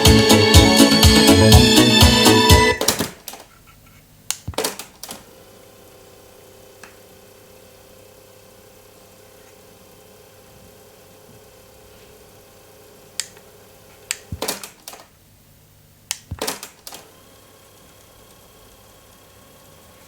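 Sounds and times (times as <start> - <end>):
boombox mechanical clicks: 16.1 - 17.1.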